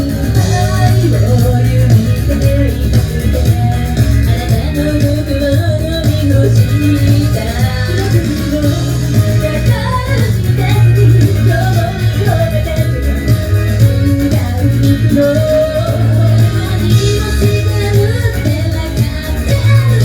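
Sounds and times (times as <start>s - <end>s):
female voices singing: 0.0s - 20.0s
pop backing track with heavy bass: 0.0s - 20.0s.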